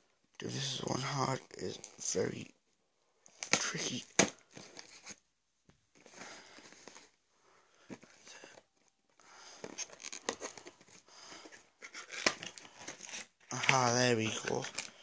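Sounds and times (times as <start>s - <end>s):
packaging tearing and crinkling: 11.9s - 15.0s.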